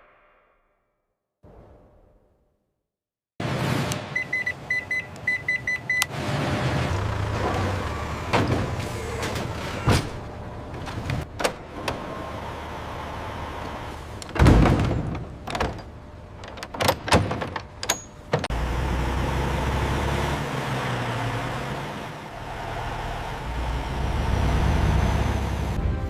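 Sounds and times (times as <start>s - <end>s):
low mechanical hum: 7.1s - 19.0s.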